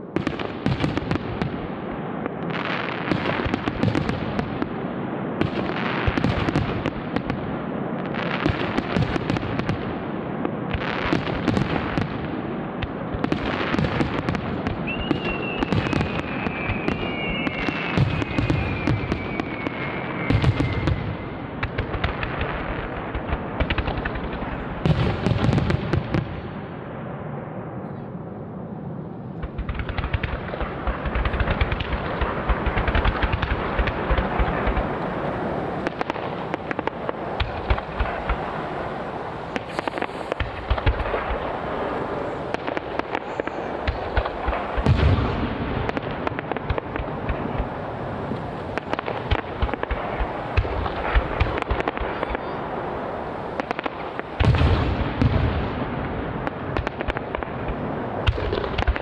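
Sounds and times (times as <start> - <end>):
fireworks crackling and popping: 0.0 - 26.5, 29.0 - 59.0
deep firework booms: 0.1 - 27.9, 28.9 - 59.0
firework shells bursting: 29.4 - 55.4.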